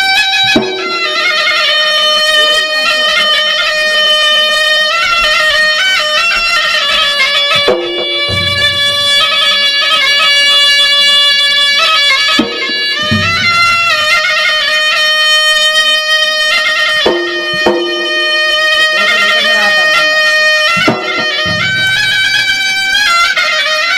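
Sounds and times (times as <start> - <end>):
shrill double-reed pipe melody: 0.0 - 23.9
low drum strokes: 7.5 - 11.6, 12.4 - 15.6, 17.0 - 19.9, 20.7 - 23.1.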